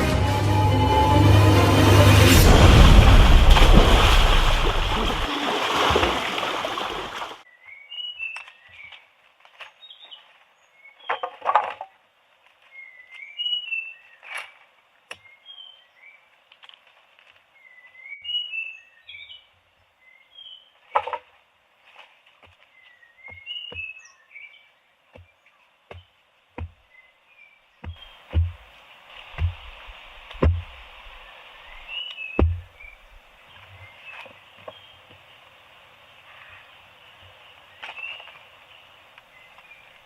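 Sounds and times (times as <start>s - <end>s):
small birds chirping: 22.6s - 28.6s
knocks or rustles: 27.8s - 28.7s, 29.3s - 31.2s, 32.4s - 33.2s.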